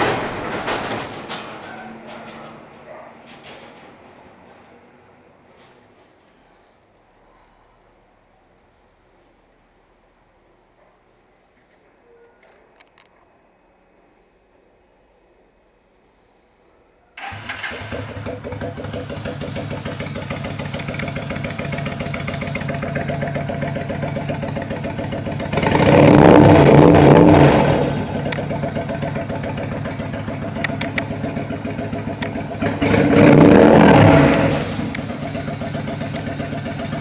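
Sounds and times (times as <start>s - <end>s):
motorcycle engine idling and revving: 17.2s - 37.0s.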